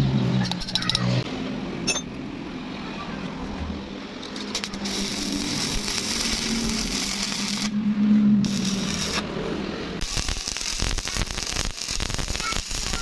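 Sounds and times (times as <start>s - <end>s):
electric arc welding crackling hiss: 4.4s - 7.8s, 8.4s - 9.3s, 10.0s - 13.0s.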